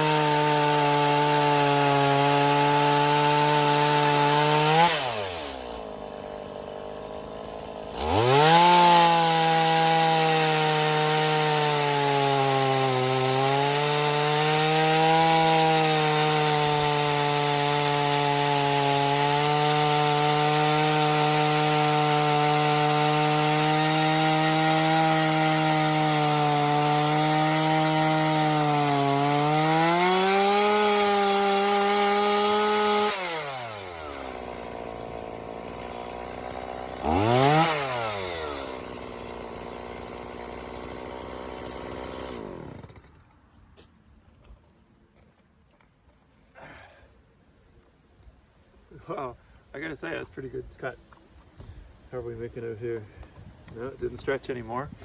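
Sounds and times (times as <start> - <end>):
chainsaw idling: 0.0 - 43.4
chainsaw cutting through log: 0.0 - 43.5, 46.6 - 47.0.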